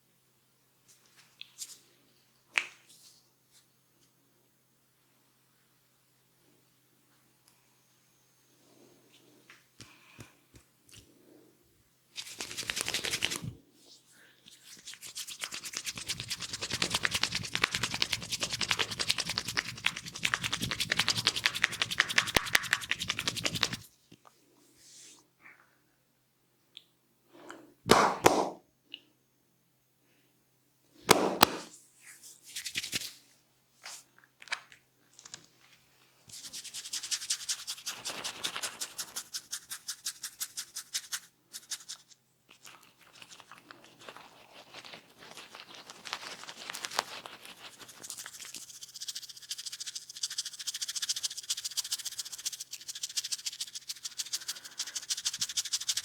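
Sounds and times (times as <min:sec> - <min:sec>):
fingers scratching through hair: 0:12.2 - 0:13.6, 0:14.6 - 0:23.9, 0:36.3 - 0:56.0.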